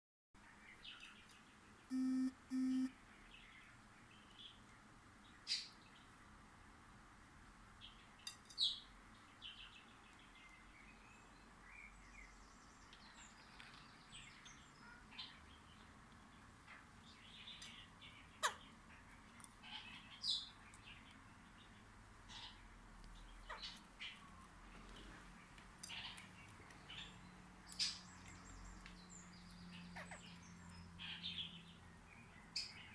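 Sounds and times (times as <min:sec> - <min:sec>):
parakeets chirping: 0:30.0 - 0:30.4.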